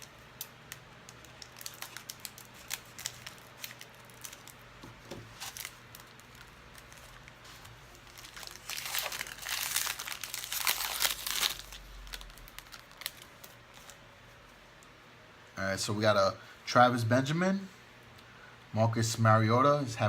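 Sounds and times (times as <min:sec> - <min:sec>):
foil wrapper tearing and crinkling: 0:00.0 - 0:04.6, 0:05.3 - 0:14.0.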